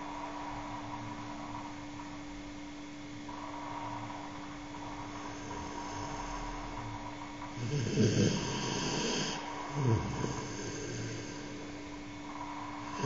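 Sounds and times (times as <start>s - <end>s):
faint steady hum: 0.0s - 13.0s
loud hissy snoring: 4.9s - 13.0s.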